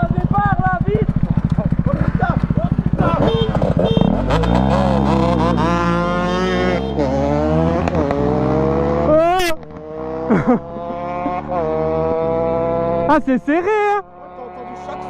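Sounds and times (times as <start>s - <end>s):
engine revving and accelerating: 1.9s - 13.4s, 14.2s - 15.0s.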